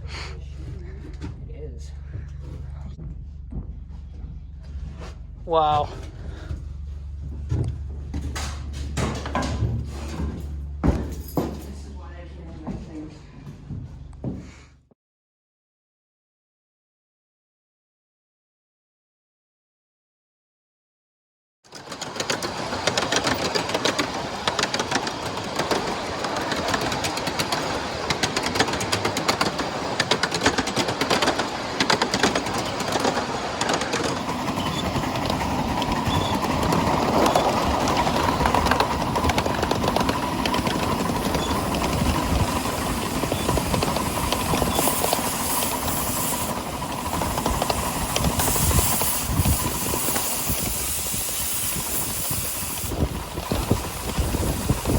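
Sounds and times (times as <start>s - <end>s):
wheels clicking over rail joints: 0.0s - 11.8s, 21.7s - 54.9s
miniature train running: 21.7s - 54.9s.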